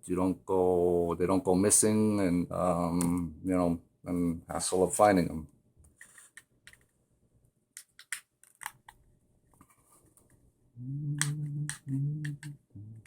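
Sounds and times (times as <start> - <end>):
man humming or mumbling: 10.8 - 13.0.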